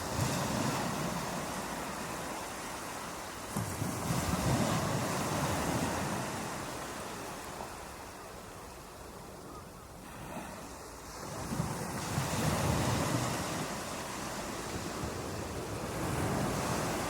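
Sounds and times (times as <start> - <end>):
ocean waves breaking on beach: 0.0 - 17.0.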